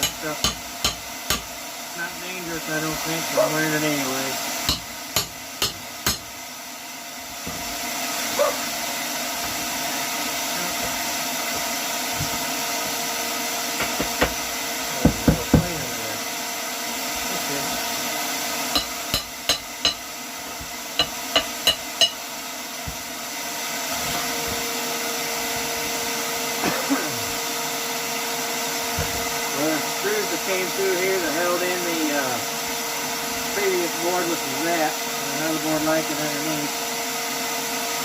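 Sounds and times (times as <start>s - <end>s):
hammer striking plywood: 13.8s - 14.4s, 15.0s - 15.8s.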